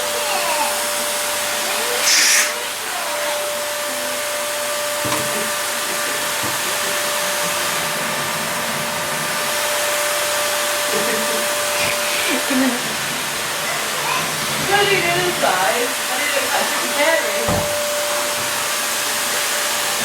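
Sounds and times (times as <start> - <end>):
vacuum cleaner running: 0.0 - 20.0.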